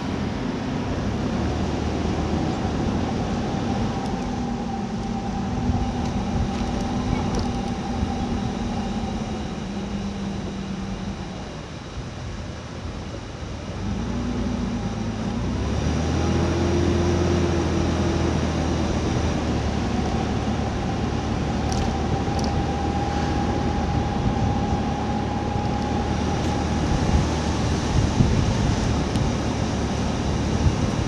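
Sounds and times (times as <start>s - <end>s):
motor humming: 2.4s - 11.9s.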